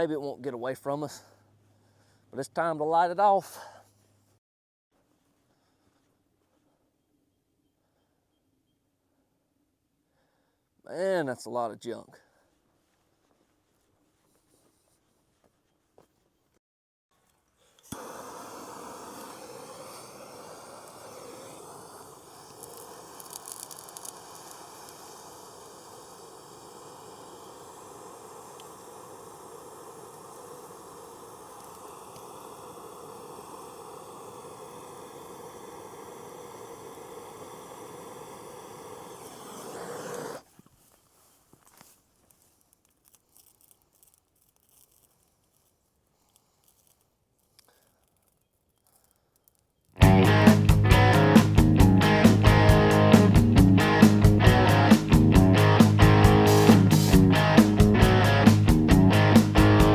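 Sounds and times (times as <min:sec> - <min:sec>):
faint scattered crackling: 0:17.2 - 0:33.0, 0:37.0 - 0:50.0
flames rushing hiss: 0:17.7 - 0:40.6, 0:50.0 - 0:59.9.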